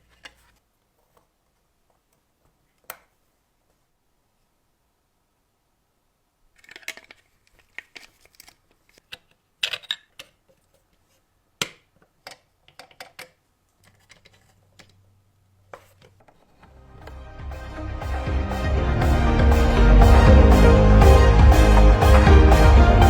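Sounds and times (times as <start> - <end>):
small hard parts clicking: 12.1 - 15.0.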